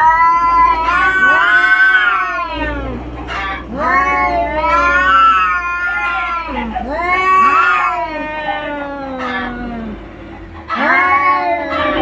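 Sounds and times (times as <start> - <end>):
cats caterwauling: 0.0 - 12.0.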